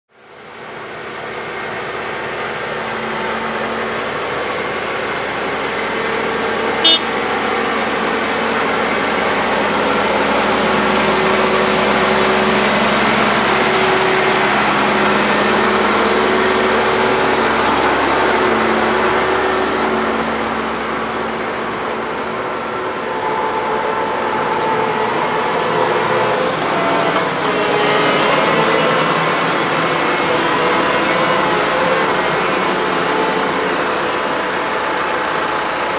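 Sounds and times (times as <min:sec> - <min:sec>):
farm machinery engines running: 0:00.2 - 0:35.9
short horn toot: 0:06.8 - 0:07.1.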